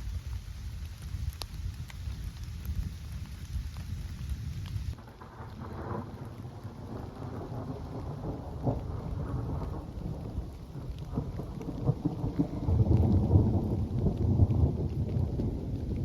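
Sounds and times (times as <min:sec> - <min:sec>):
rain falling in a forest: 0:00.0 - 0:16.0.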